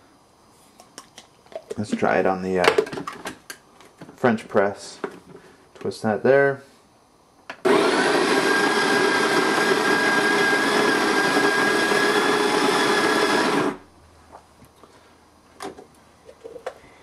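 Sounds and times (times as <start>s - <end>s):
coffee grinder whirring: 7.6s - 13.8s.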